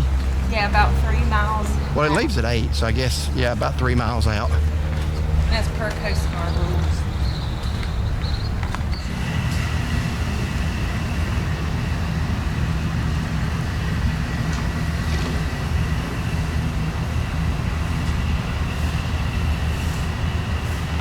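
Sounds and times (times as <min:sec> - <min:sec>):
boat engine idling: 0:00.0 - 0:21.0.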